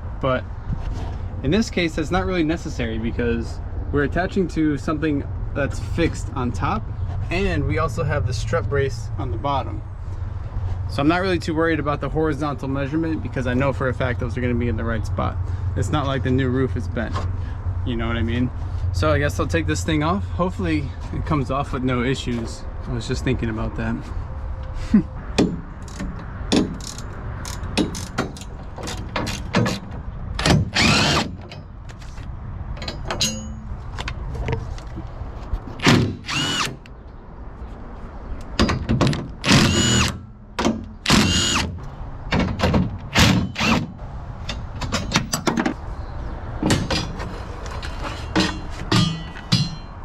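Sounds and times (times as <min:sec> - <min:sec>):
power drill whining: 0:30.8 - 0:31.2, 0:36.3 - 0:36.8, 0:39.5 - 0:40.1, 0:41.1 - 0:41.7
metal parts clanking: 0:32.7 - 0:34.2, 0:46.6 - 0:50.0.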